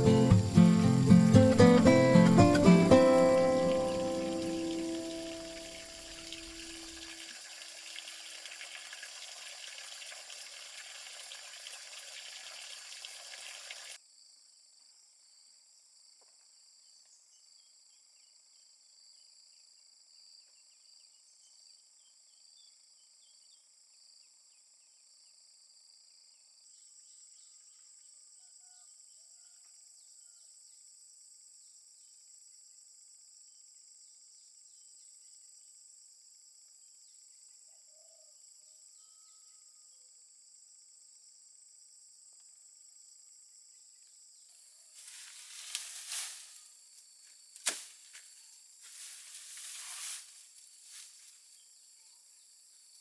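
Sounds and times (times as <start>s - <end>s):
crickets trilling: 0.0s - 14.0s, 44.3s - 53.0s.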